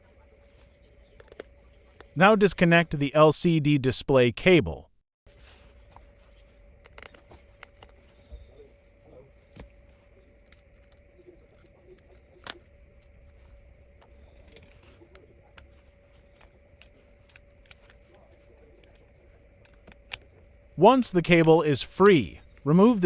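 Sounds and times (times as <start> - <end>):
faint steady hum: 0.0 - 23.0
small tools clicking and tapping: 0.6 - 2.2, 5.8 - 21.6.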